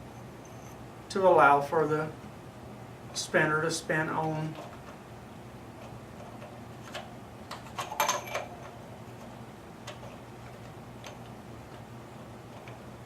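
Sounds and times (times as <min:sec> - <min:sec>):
steady low hum: 0:00.0 - 0:13.0
propeller spinner clicking: 0:05.7 - 0:13.0.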